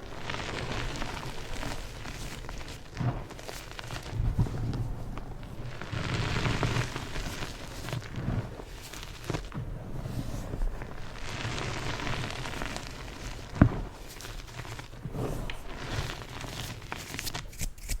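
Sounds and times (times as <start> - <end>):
chalk being crushed: 5.9 - 18.0.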